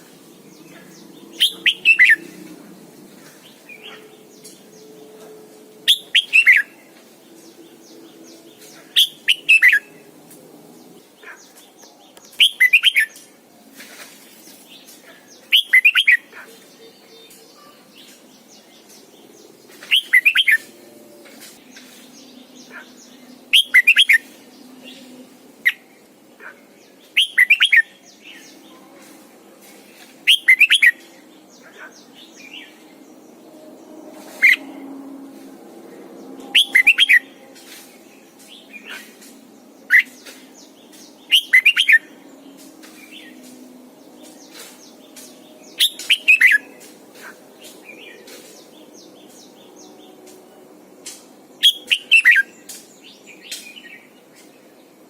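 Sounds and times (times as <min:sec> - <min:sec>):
bird singing falling phrases: 0:00.0 - 0:35.4, 0:36.0 - 0:55.0.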